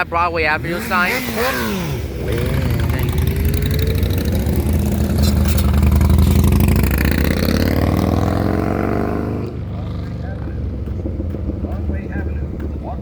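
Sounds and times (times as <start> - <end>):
vehicle engine accelerating: 0.0 - 13.0.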